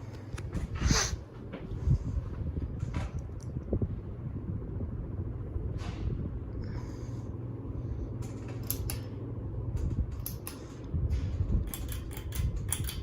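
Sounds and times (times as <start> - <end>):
ceiling fan humming: 0.0 - 13.0
sharp clicks and knocks: 11.5 - 13.0.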